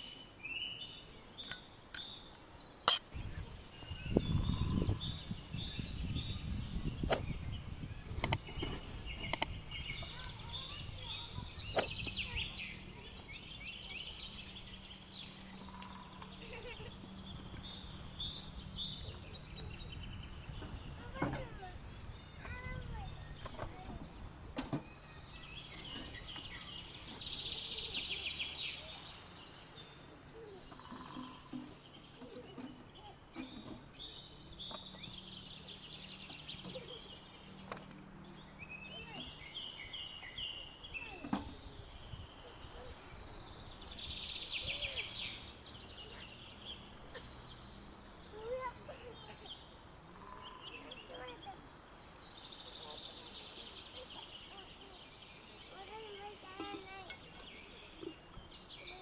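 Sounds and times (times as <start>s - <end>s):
birds chirping: 0.0s - 59.0s
fast bird trill: 9.3s - 13.0s.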